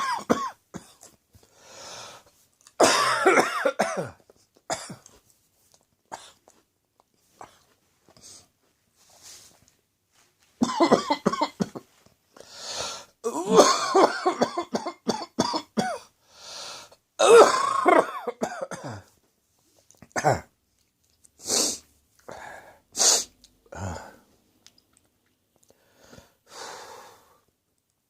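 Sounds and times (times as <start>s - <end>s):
person coughing: 0.0s - 1.2s, 2.8s - 5.1s, 10.6s - 12.0s, 13.3s - 16.1s, 17.2s - 19.1s, 20.1s - 20.5s
sharp breaths and gasps: 1.4s - 2.4s, 12.4s - 13.2s, 16.2s - 17.0s, 25.6s - 27.5s.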